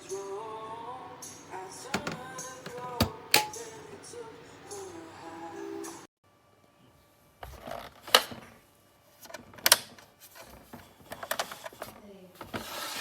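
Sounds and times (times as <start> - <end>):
sharp clicks and knocks: 2.0 - 3.6.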